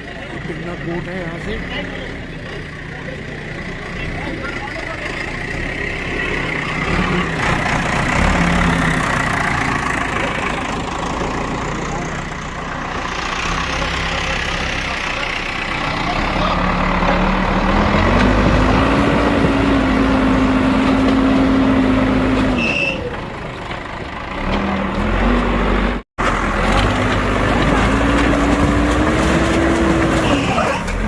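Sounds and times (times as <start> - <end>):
bulldozer diesel engine revving: 0.0 - 31.0.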